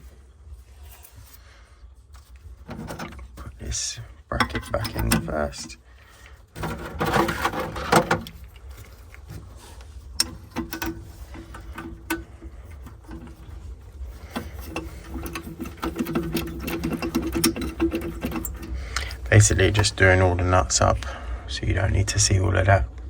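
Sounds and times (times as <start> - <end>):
metal parts clattering: 6.6 - 9.0, 10.2 - 19.8.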